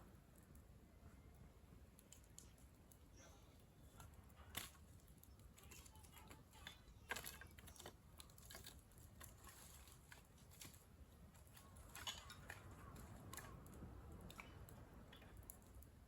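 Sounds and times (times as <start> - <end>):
small clicks and ticks: 1.9 - 16.0.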